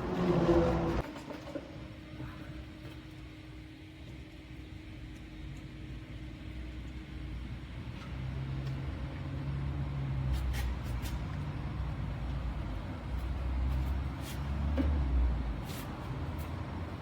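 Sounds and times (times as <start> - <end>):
car engine drone: 0.0 - 1.0.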